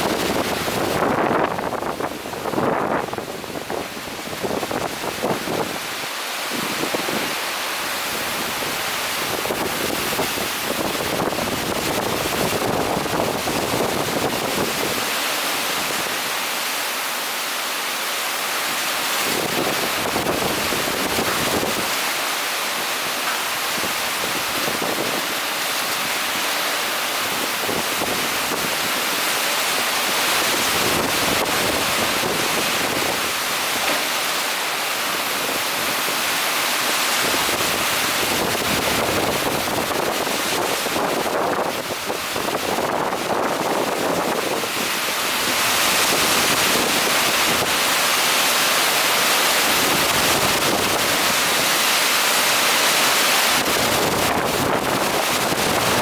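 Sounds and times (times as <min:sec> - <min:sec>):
wind buffeting microphone: 0:00.0 - 0:07.4, 0:08.0 - 0:16.1, 0:37.2 - 0:48.0, 0:53.4 - 0:56.0
strong wind and heavy rain: 0:00.0 - 0:56.0.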